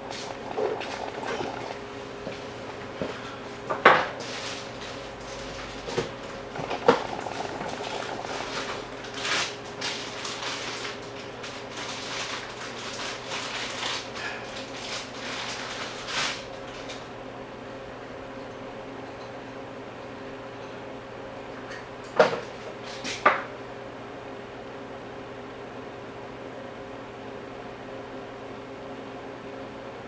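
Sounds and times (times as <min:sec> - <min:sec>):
faint hum: 0:00.0 - 0:17.0.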